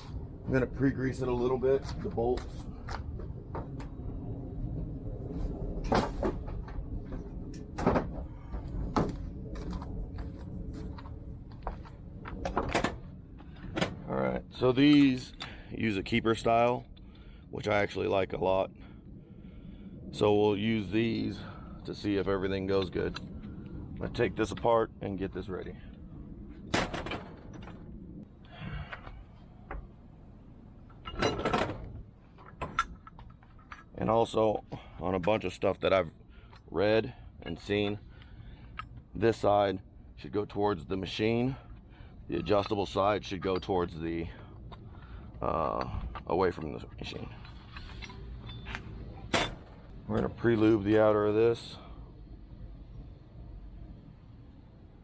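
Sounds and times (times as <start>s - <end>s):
steady low rumble: 0.0s - 55.0s
metal bolts clicking and clunking: 31.0s - 33.9s.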